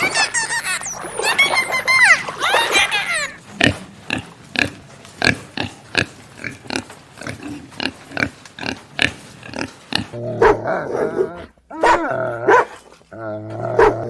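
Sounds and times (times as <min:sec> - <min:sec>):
pig grunting: 0:03.4 - 0:14.0.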